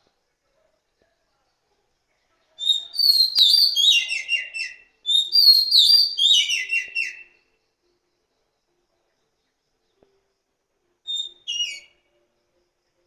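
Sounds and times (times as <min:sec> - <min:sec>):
bird singing whistled notes: 0:02.6 - 0:07.5, 0:11.0 - 0:12.2.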